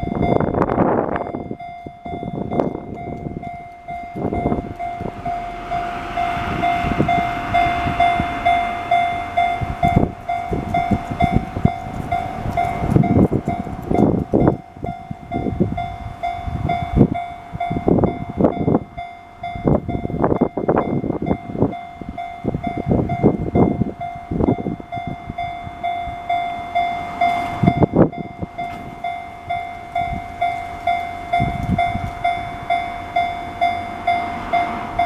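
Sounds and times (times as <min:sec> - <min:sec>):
level crossing alarm bell: 0:00.0 - 0:35.0
train wheels knocking on rail joints: 0:02.4 - 0:15.8.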